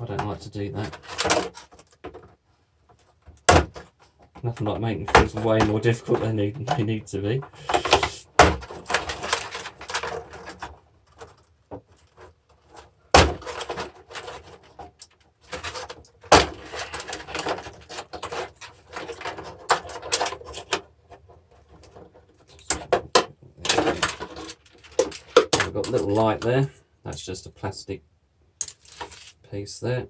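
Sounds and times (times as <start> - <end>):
metal parts clattering and scraping: 7.5 - 26.7, 28.6 - 29.4.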